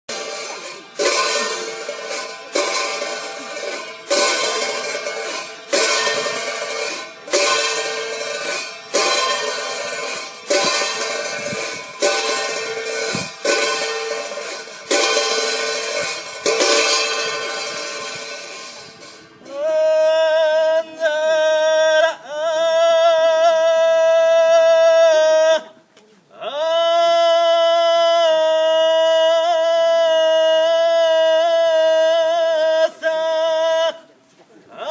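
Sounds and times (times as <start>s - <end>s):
ritual bell ringing: 0.1s - 20.0s.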